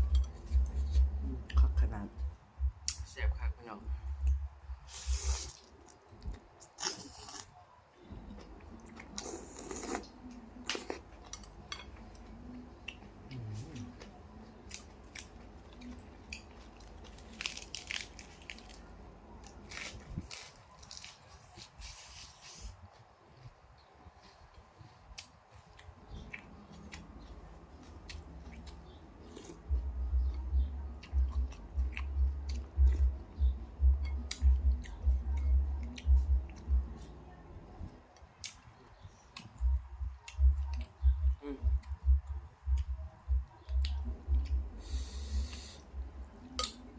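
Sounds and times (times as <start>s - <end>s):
low pulsing thumps: 0.0s - 4.8s, 29.7s - 37.0s, 39.6s - 44.8s
mouth eating noises: 4.2s - 7.6s, 8.2s - 11.6s, 12.2s - 18.7s, 38.2s - 46.9s
person slurping noodle soup: 4.9s - 5.7s, 6.8s - 7.5s, 9.2s - 10.1s
chewing noodles: 4.9s - 7.6s, 8.2s - 29.8s.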